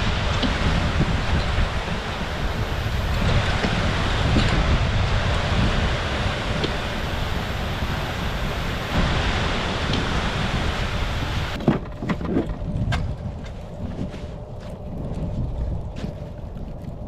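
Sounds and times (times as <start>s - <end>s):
wind blowing across microphone: 0.0s - 17.0s.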